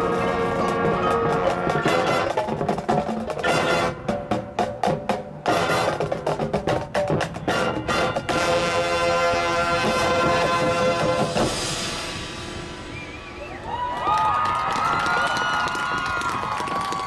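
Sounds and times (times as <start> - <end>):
marching band wind chords: 0.0 - 17.0.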